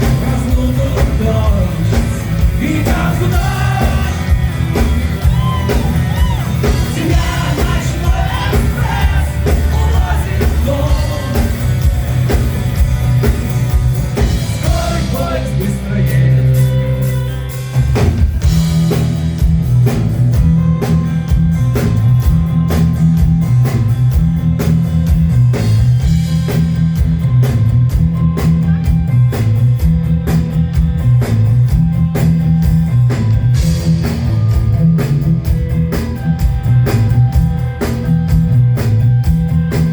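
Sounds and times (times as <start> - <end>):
person singing: 0.0 - 4.6, 5.3 - 11.8, 14.6 - 16.8
rock band playing live: 0.0 - 39.9.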